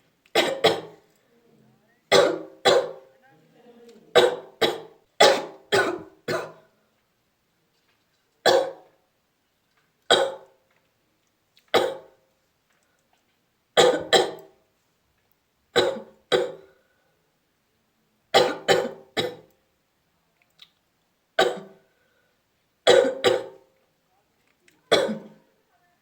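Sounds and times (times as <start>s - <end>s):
person coughing: 2.1s - 3.0s, 4.1s - 6.6s, 15.8s - 16.6s, 18.4s - 19.5s, 21.4s - 21.8s, 22.9s - 23.6s, 24.9s - 25.4s.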